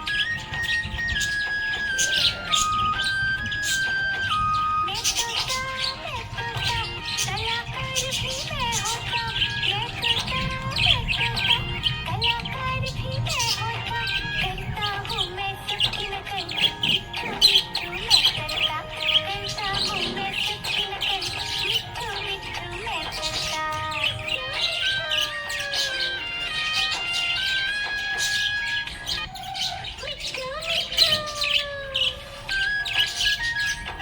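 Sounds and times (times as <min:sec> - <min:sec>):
background music: 0:00.0 - 0:34.0
budgerigar chirping: 0:00.0 - 0:34.0.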